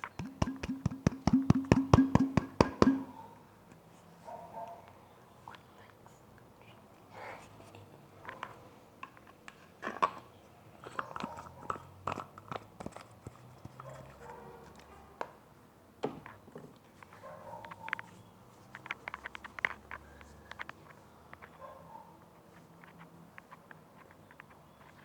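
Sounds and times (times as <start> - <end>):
clicks and taps on microphone: 0.0 - 3.2.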